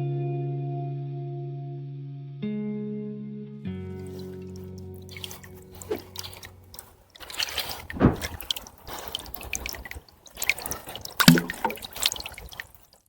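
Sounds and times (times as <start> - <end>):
water splashing and dripping: 4.0 - 13.0.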